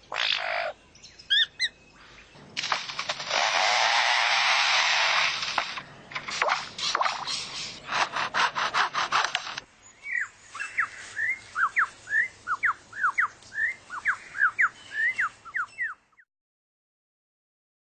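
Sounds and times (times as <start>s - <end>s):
bird's harsh pulsing rasp: 2.6s - 9.7s.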